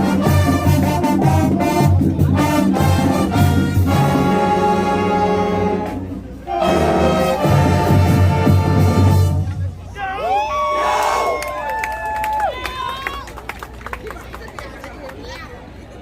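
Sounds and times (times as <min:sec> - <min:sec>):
brass chord: 0:00.0 - 0:09.6
marching band playing: 0:00.0 - 0:09.9.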